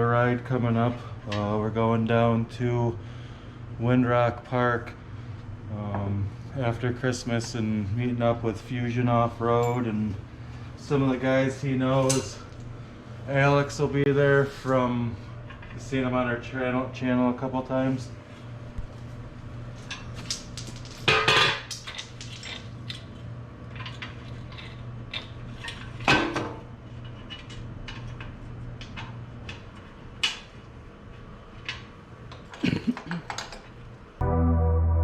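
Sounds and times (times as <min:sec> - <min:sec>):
steady low hum: 0:00.0 - 0:32.9, 0:33.8 - 0:35.0
music: 0:34.2 - 0:35.0.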